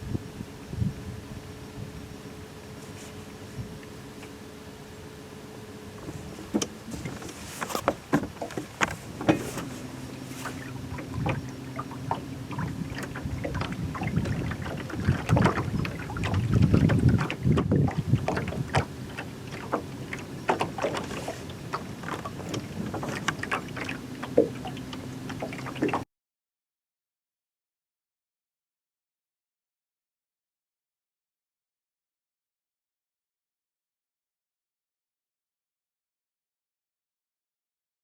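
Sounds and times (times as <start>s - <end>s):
boat motor humming: 0.0s - 26.0s
knocks and clatter on boat: 5.9s - 26.0s.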